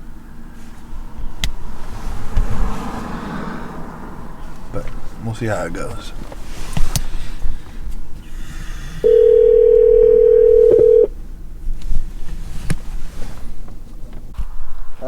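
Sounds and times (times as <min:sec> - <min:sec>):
telephone ringback tone: 0:09.0 - 0:11.1.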